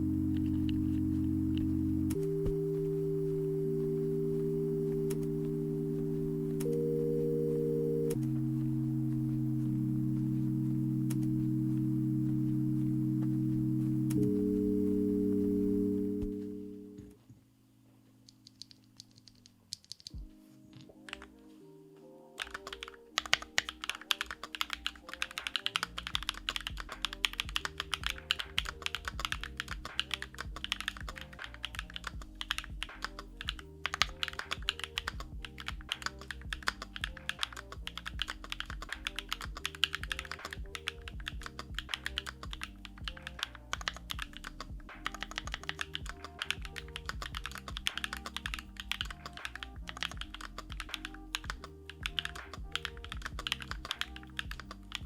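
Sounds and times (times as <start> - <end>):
background music: 0.0 - 55.0
mechanical keyboard typing: 18.3 - 20.2, 22.4 - 55.0.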